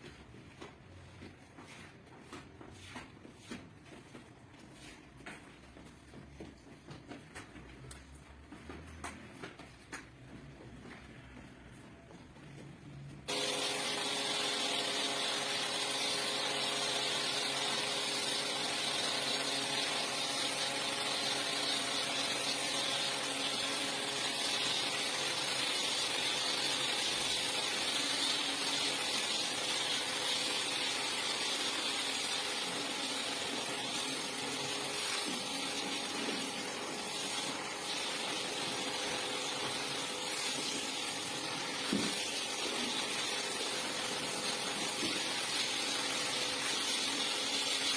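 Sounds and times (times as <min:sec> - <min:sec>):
rug-cleaning machine motor hissing: 0:13.3 - 0:47.9.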